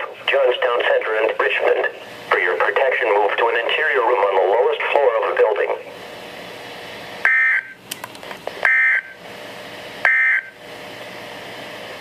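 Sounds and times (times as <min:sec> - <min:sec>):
radio hiss: 0:00.0 - 0:06.0.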